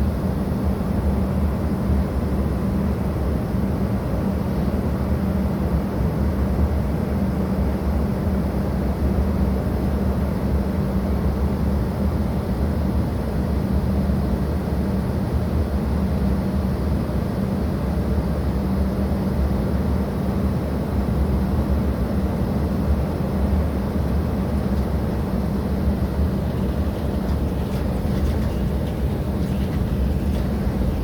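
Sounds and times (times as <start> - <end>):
jet aircraft rumble: 22.5 - 31.0.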